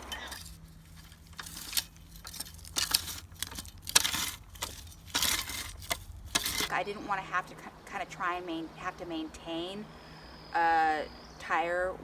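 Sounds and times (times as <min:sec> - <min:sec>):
hoe blade scraping soil: 0:00.0 - 0:06.8.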